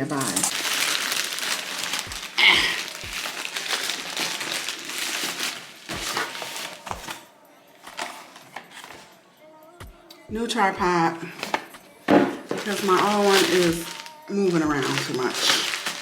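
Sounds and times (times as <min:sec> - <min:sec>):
wrapping crinkling: 0:00.0 - 0:09.2, 0:11.2 - 0:16.0
box thumps: 0:00.5 - 0:07.2, 0:11.3 - 0:14.1.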